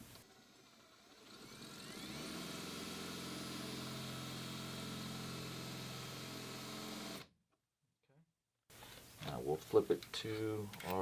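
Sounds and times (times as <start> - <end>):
power drill whining: 0.0 - 7.3.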